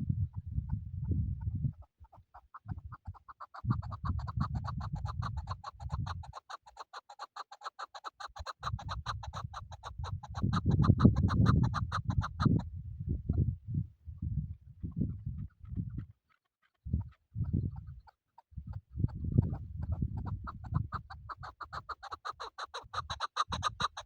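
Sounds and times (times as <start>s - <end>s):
partridge clucking call: 1.8s - 12.6s, 19.1s - 24.0s.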